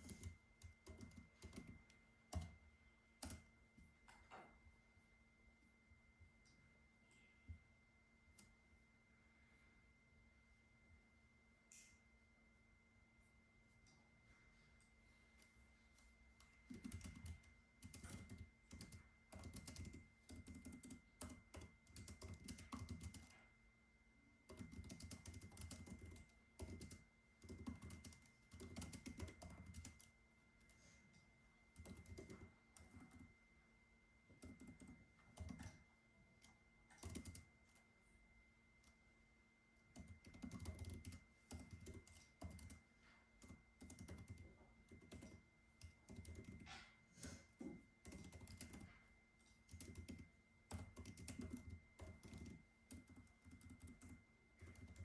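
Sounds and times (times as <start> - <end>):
typing on computer keyboard: 0.0 - 2.6, 3.2 - 3.5, 16.4 - 23.5, 24.5 - 30.8, 31.7 - 33.3, 34.3 - 35.8, 36.4 - 37.8, 39.9 - 42.8, 43.4 - 47.4, 48.0 - 49.0, 49.6 - 55.0.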